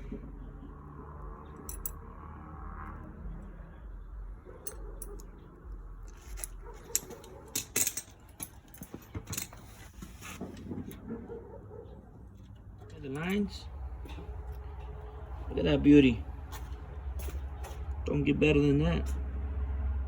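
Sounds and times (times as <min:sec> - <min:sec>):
sharp clicks and clinks: 0:01.6 - 0:02.0, 0:06.0 - 0:09.7.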